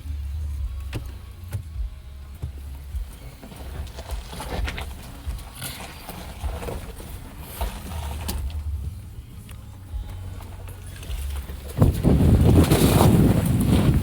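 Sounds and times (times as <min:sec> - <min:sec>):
vehicle low rumble: 0:00.0 - 0:14.0
knocks and rattles: 0:00.6 - 0:09.0.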